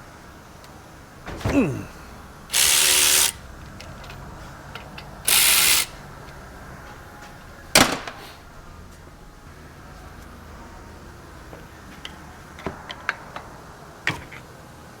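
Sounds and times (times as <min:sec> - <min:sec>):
metal clunk: 0:01.2 - 0:05.3, 0:07.2 - 0:08.4
power wrench bursts: 0:01.3 - 0:04.2, 0:04.8 - 0:06.0.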